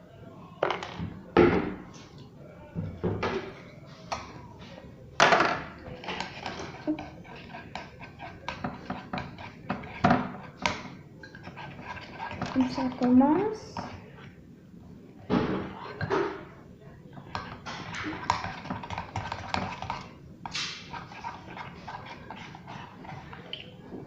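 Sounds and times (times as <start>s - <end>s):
spoon scraping against a bowl: 5.9s - 13.1s, 15.7s - 16.1s, 17.3s - 23.7s.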